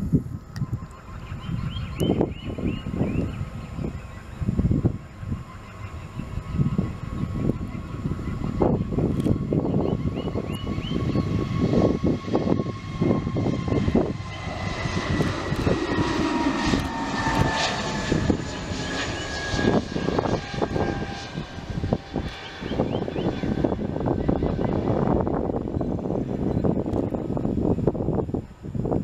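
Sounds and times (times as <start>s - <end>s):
jet engines rumbling and whining: 0.0s - 29.0s.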